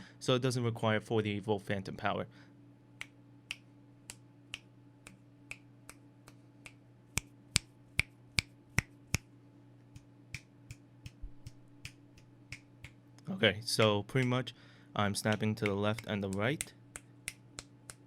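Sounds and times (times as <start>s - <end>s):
finger snaps: 3.0s - 9.3s, 9.9s - 13.0s, 15.3s - 18.0s.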